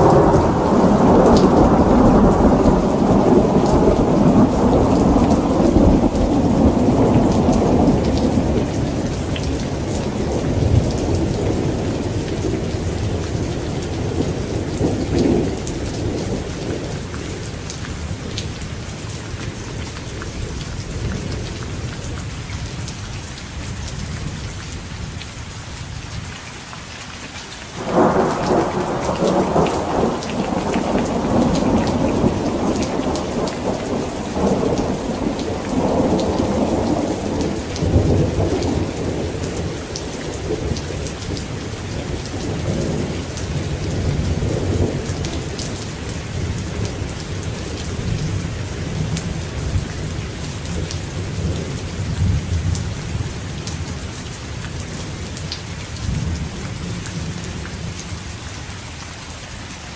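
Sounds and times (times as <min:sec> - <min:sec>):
rolling thunder: 0:00.0 - 0:18.6, 0:27.8 - 0:53.3
steady rain hissing: 0:00.0 - 0:59.9.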